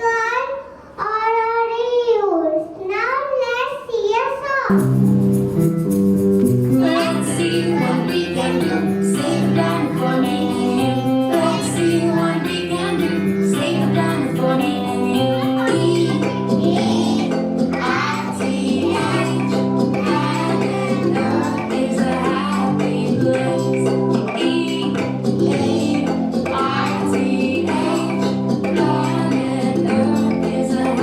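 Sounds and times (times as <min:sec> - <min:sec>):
musical accompaniment: 0:04.7 - 0:31.0
child-like and female singing: 0:06.8 - 0:17.0, 0:17.8 - 0:31.0.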